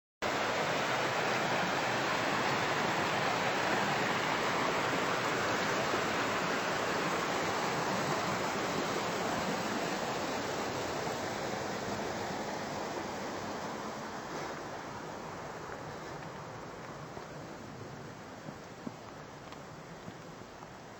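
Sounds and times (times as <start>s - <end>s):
river water rushing: 0.2s - 20.9s.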